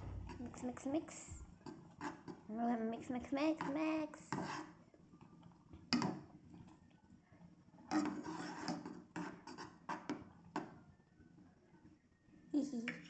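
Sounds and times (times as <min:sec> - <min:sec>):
utensil scraping a dish: 0:01.9 - 0:02.4, 0:03.6 - 0:04.8, 0:07.9 - 0:10.1.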